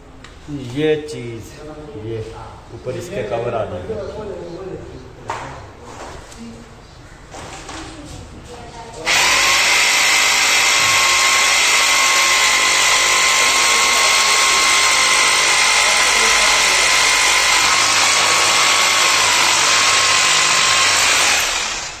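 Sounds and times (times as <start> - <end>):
electric power tool whining: 9.1 - 22.0.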